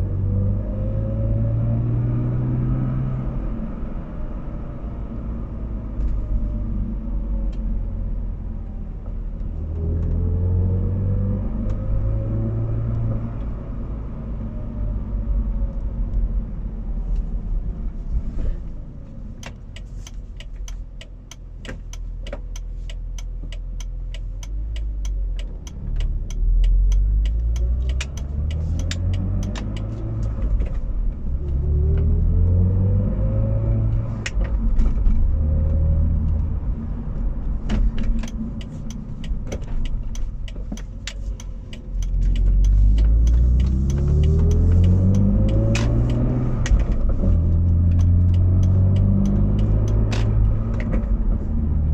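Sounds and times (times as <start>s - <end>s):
car engine rumbling: 0.0s - 51.9s
rising hum from car: 0.0s - 51.9s.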